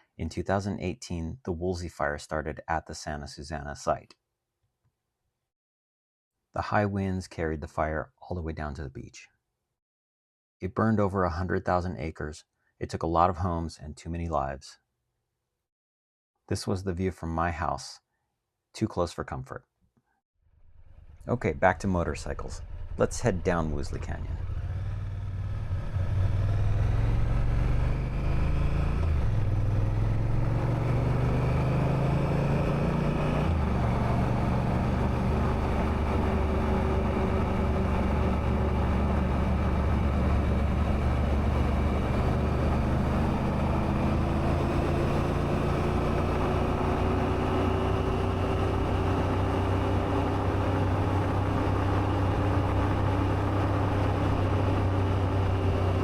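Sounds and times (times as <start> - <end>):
motorcycle engine accelerating: 20.8 - 56.0.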